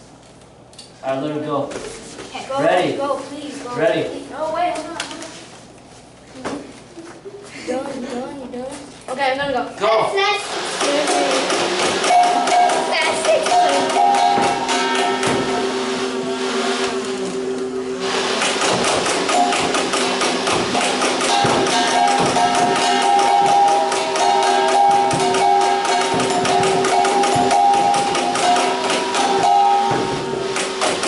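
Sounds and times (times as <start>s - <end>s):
toy blaster firing rapidly: 18.4s - 29.3s.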